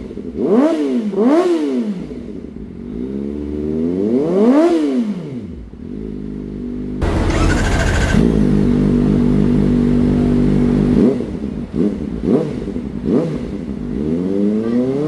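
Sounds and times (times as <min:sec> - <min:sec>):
motorcycle engine revving: 0:07.0 - 0:10.0.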